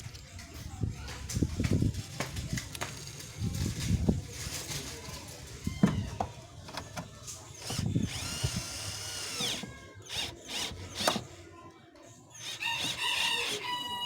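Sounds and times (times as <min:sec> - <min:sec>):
cordless drill whining: 0:07.6 - 0:11.3, 0:12.4 - 0:14.0.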